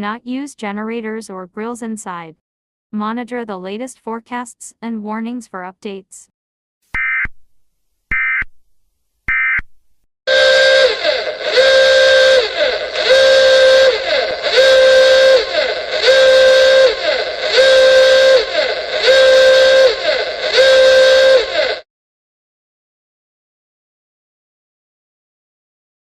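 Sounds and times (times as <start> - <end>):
horn-like alarm tone: 10.3 - 21.8.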